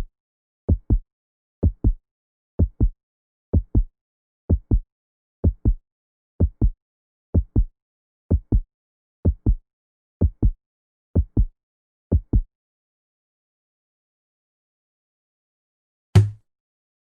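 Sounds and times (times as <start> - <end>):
heartbeat thumps: 0.7 - 1.0.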